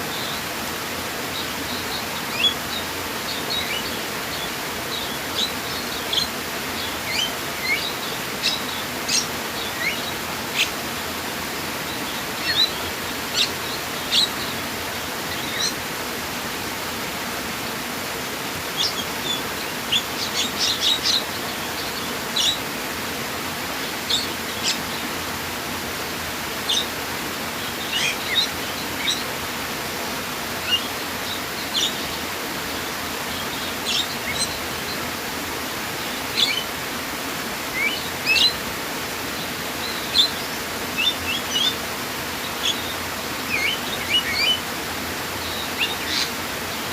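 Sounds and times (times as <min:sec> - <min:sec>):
running water rushing: 0:00.0 - 0:46.9
small birds chirping: 0:00.1 - 0:15.9, 0:18.5 - 0:25.7, 0:26.5 - 0:35.3, 0:35.9 - 0:46.9.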